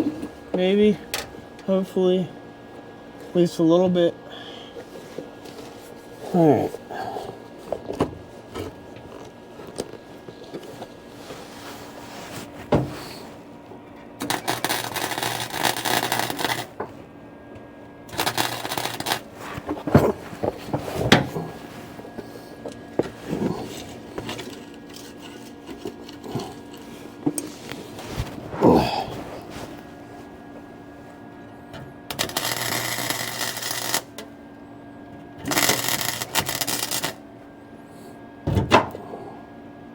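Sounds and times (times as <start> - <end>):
faint steady hum: 0.0 - 39.9
welder arc crackling: 14.2 - 16.8, 18.1 - 19.7, 32.1 - 34.3, 35.4 - 37.2.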